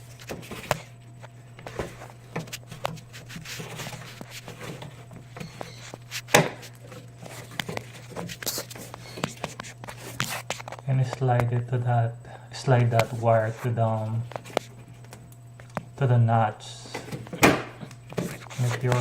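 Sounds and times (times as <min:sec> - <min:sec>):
steady low hum: 0:00.0 - 0:19.0
clicks and scrapes of plastic cover: 0:02.4 - 0:10.8.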